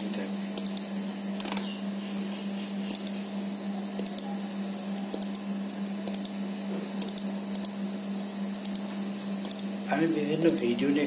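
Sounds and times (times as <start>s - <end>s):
steady low hum: 0.0s - 11.0s
computer mouse clicks: 0.6s - 1.6s, 2.8s - 3.2s, 4.0s - 4.3s, 5.1s - 6.4s, 7.0s - 7.8s, 8.6s - 9.7s, 10.4s - 10.7s.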